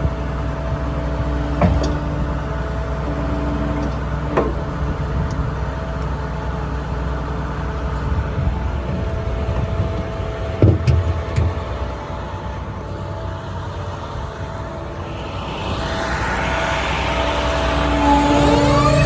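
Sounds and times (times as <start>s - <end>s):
diesel engine running: 0.0s - 19.0s
rising whoosh: 13.5s - 19.0s.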